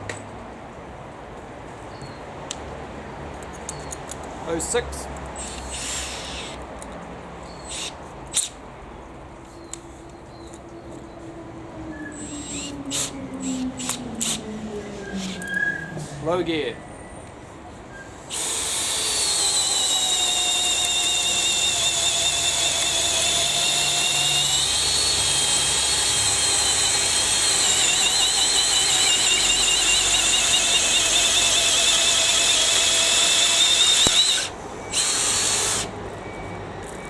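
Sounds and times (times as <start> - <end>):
drill motor whining: 5.4 - 6.6, 7.6 - 8.5, 12.0 - 16.3, 18.2 - 36.4.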